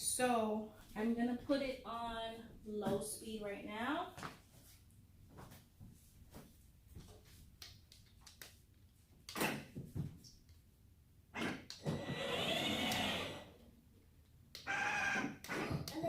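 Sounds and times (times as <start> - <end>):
electric toy car motors whining: 11.4 - 13.6, 14.6 - 15.4.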